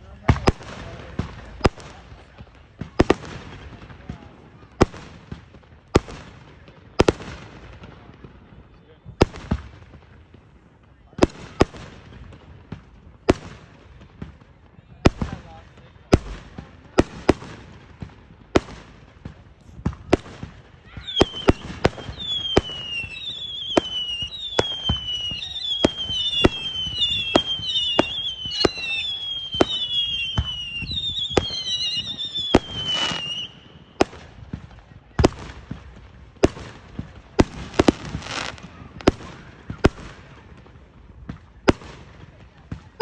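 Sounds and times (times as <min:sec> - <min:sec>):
fireworks banging: 0:00.0 - 0:43.0
firework whistles falling in pitch: 0:20.8 - 0:34.1.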